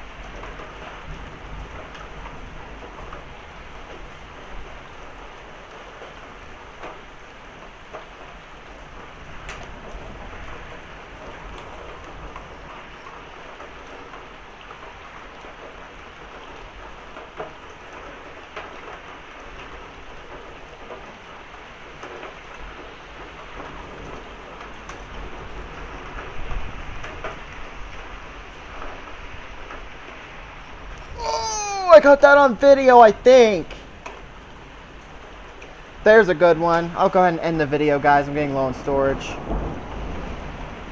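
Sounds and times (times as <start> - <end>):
heavy rain pouring: 0.0 - 40.9
raindrops ticking on surfaces: 0.0 - 40.9
thunder rumbling: 38.2 - 40.9.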